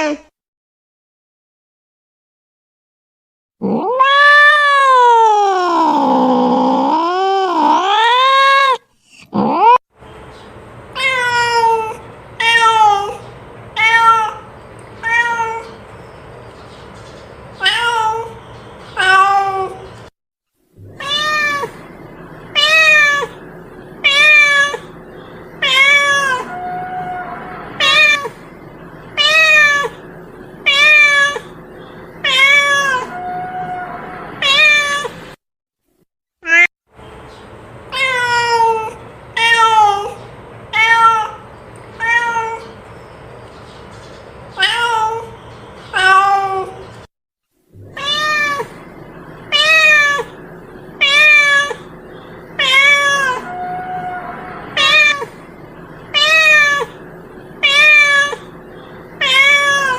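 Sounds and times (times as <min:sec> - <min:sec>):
cat meowing: 0:03.6 - 0:08.8, 0:11.0 - 0:15.8, 0:17.6 - 0:18.4, 0:19.0 - 0:19.9, 0:20.8 - 0:21.8, 0:22.5 - 0:23.4, 0:24.0 - 0:25.0, 0:25.6 - 0:28.4, 0:29.1 - 0:30.0, 0:30.6 - 0:31.6, 0:32.2 - 0:35.2, 0:36.4 - 0:36.7, 0:37.9 - 0:41.4, 0:42.0 - 0:42.8, 0:44.6 - 0:46.9, 0:47.8 - 0:48.8, 0:49.5 - 0:50.4, 0:51.0 - 0:51.9, 0:52.6 - 0:55.4, 0:56.0 - 0:57.0, 0:57.6 - 0:59.9.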